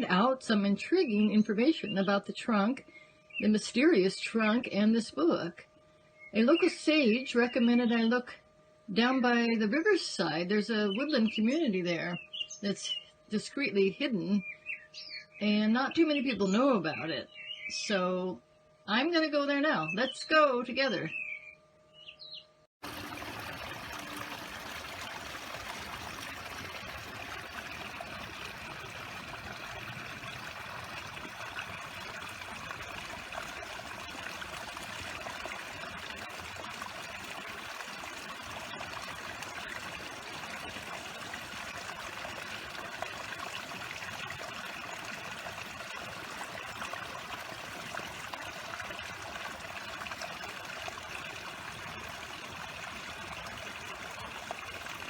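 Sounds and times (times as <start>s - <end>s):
stream flowing: 22.8s - 55.0s.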